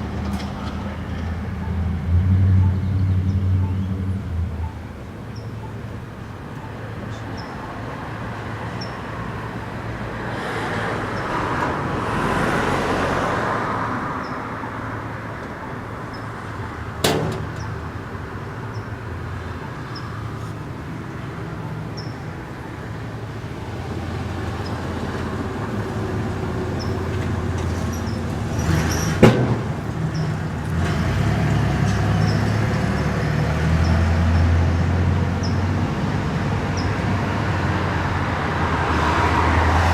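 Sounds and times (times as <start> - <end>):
road traffic rumble: 0.0 - 39.9
sharp knocks: 17.0 - 17.8, 29.2 - 29.8.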